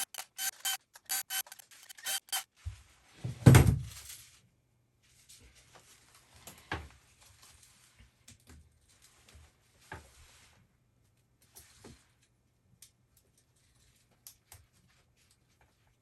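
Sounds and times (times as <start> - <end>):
small clicks: 0.0 - 2.4.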